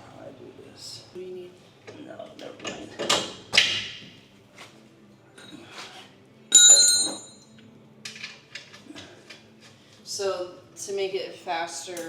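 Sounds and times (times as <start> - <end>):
metal clang ringing: 6.5 - 7.5
tools and parts clicking: 7.0 - 9.5.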